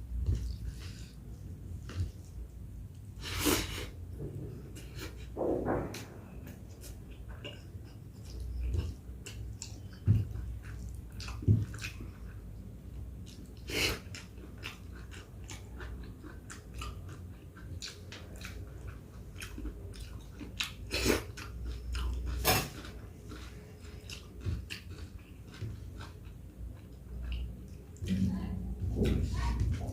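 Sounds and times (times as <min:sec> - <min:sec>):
person chewing food: 0:00.0 - 0:04.0, 0:06.4 - 0:28.2
low thumps: 0:05.4 - 0:06.6.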